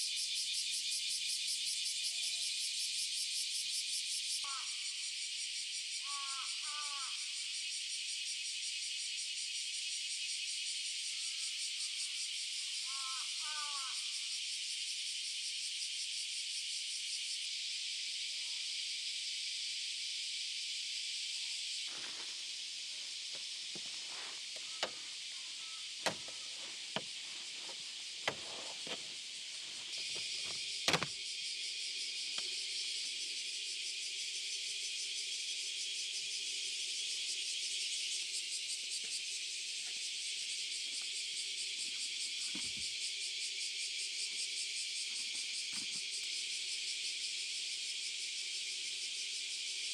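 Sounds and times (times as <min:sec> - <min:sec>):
insects chirring: 0:00.0 - 0:49.9
sharp clicks and knocks: 0:26.0 - 0:29.1, 0:30.2 - 0:31.1.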